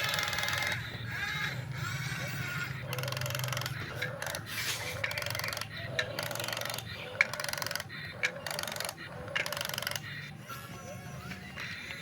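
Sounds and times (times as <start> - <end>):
small electric motors buzzing: 0.0 - 12.0.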